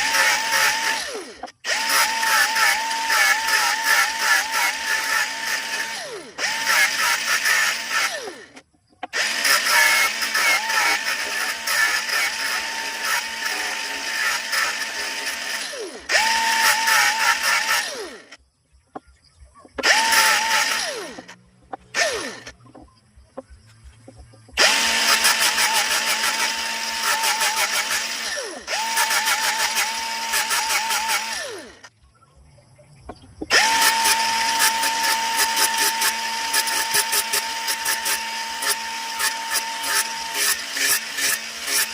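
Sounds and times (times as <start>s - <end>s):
power tool motor grinding: 0.0s - 18.4s, 19.8s - 23.5s, 24.5s - 31.9s, 33.4s - 41.9s.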